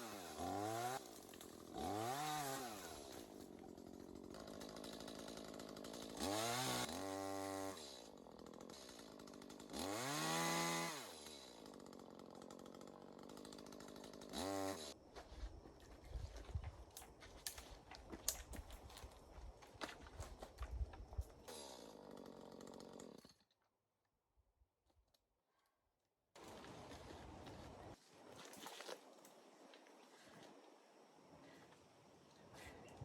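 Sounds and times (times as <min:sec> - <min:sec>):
chainsaw revving: 0:00.0 - 0:15.0, 0:21.4 - 0:23.3.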